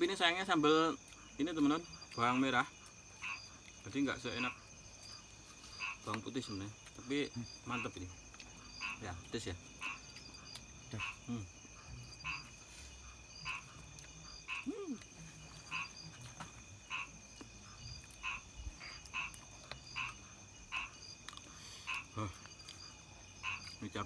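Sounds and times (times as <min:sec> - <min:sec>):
frogs croaking: 0:00.0 - 0:24.0
insects trilling: 0:00.0 - 0:24.0.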